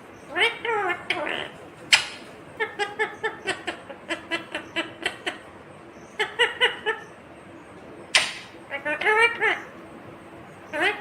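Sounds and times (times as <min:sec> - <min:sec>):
parrot chattering: 0:00.3 - 0:05.5, 0:06.1 - 0:07.2, 0:08.1 - 0:09.8, 0:10.7 - 0:11.0.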